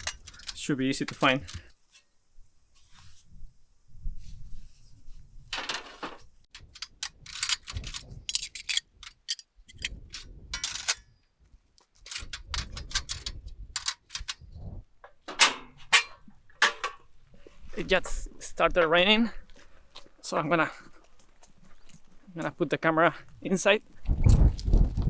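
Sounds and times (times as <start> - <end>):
steel profiles clanging: 0.0 - 1.7, 6.6 - 11.1, 12.1 - 14.4
wind rumble on microphone: 3.1 - 5.6, 23.9 - 25.0.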